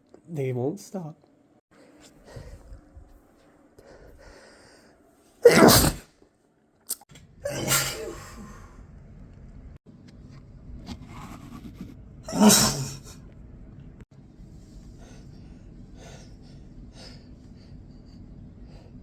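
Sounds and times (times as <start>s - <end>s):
man sneezing: 5.4s - 6.0s, 7.4s - 8.4s, 12.3s - 13.1s.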